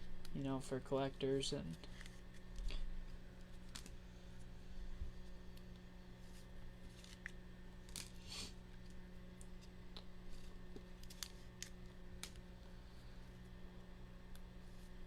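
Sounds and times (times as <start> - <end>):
faint steady hum: 0.0 - 15.0
cards sliding and rustling: 1.7 - 2.8, 3.4 - 4.0, 6.2 - 8.6, 10.3 - 12.4.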